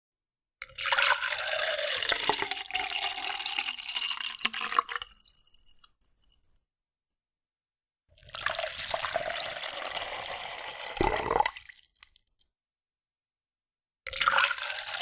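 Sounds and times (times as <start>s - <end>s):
water pouring into a glass: 0.6s - 6.5s, 8.2s - 12.3s, 14.1s - 15.0s.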